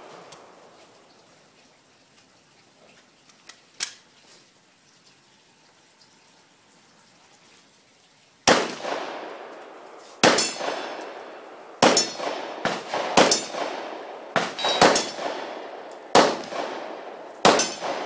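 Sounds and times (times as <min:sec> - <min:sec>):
pistol shots: 0:08.5 - 0:09.4, 0:10.2 - 0:18.0
steel plates clanging: 0:10.4 - 0:10.7, 0:11.9 - 0:12.2, 0:14.5 - 0:15.3.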